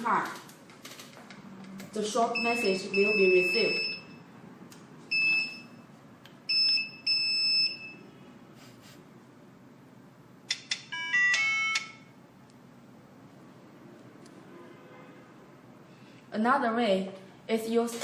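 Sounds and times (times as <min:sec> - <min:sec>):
alarm buzzer short high beeps: 0:02.3 - 0:04.2, 0:06.5 - 0:08.2.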